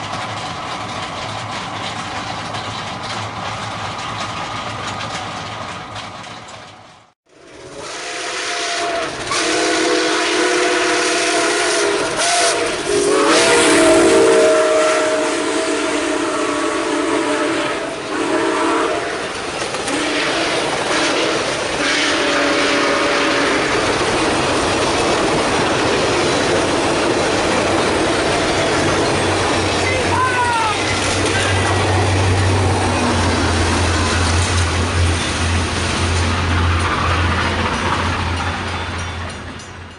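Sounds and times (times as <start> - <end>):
train rumbling past: 0.0 - 39.9
train air horn: 7.6 - 19.3, 19.9 - 23.8.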